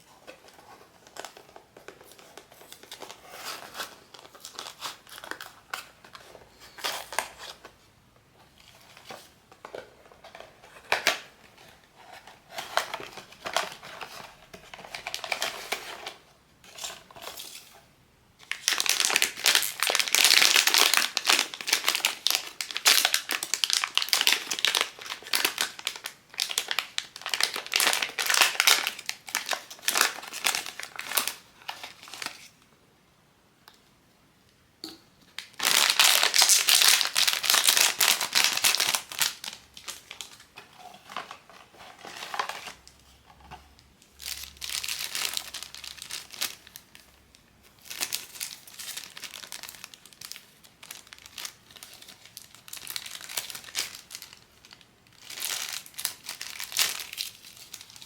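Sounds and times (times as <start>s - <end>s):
packaging crinkling: 12.1s - 16.2s, 18.4s - 32.5s, 35.4s - 43.0s, 44.0s - 47.1s, 47.7s - 58.0s.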